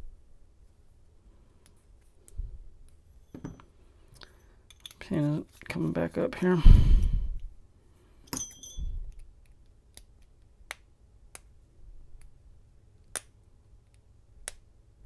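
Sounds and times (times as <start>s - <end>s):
small metal parts clinking: 4.6s - 5.2s, 8.3s - 8.9s.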